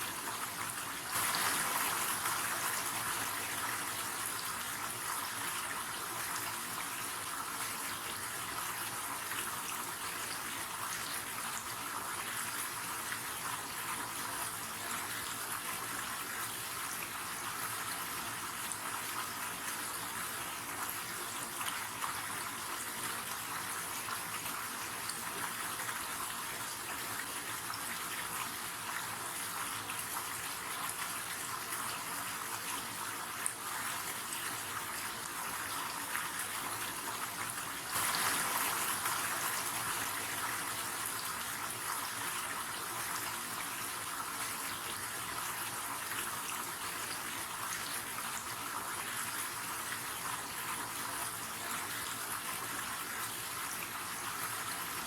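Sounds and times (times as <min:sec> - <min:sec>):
river water flowing: 0:37.8 - 0:41.1.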